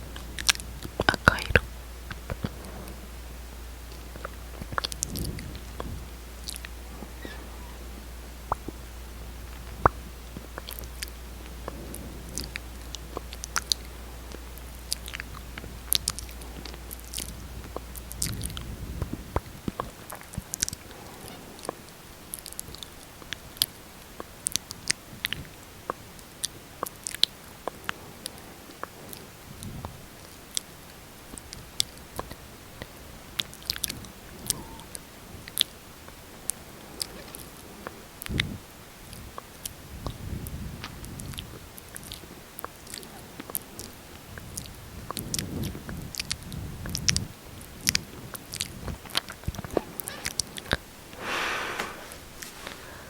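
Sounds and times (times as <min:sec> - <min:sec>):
low hum: 0:00.0 - 0:53.0
wet lip smacks and clicks: 0:00.2 - 0:03.0, 0:03.9 - 0:06.8, 0:09.5 - 0:20.9, 0:39.1 - 0:50.8.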